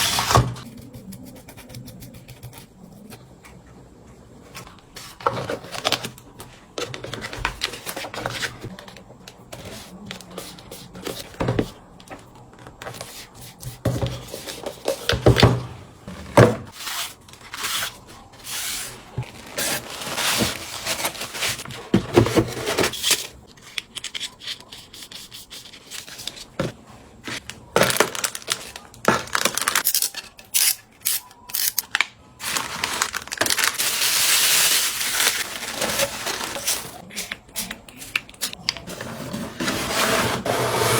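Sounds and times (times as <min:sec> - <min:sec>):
rubbing and scraping: 0:38.4 - 0:40.9.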